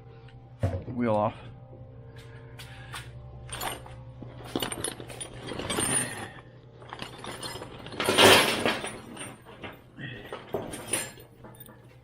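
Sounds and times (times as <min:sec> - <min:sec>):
metal hand tools clattering: 0:03.5 - 0:12.0.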